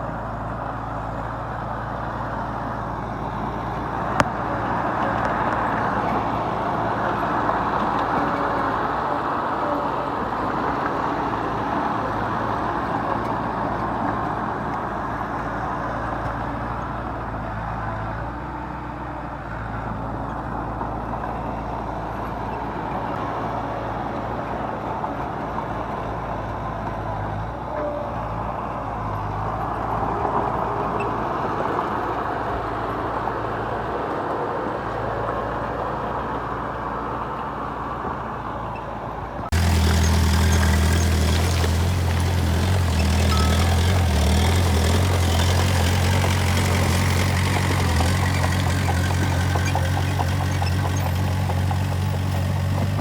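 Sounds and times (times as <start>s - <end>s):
deep close engine hum: 39.5s - 53.0s
diesel engine drone: 39.5s - 53.0s.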